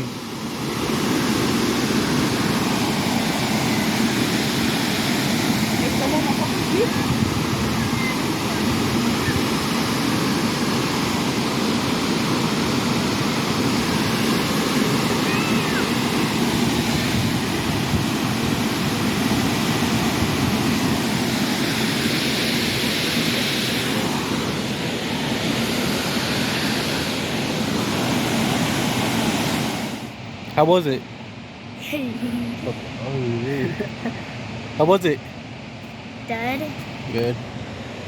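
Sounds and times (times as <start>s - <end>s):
waterfall rushing: 0.0s - 30.1s.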